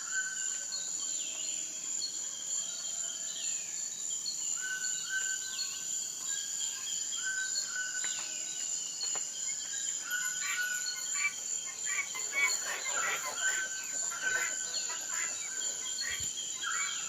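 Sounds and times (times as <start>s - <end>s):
birds calling: 10.2s - 17.0s.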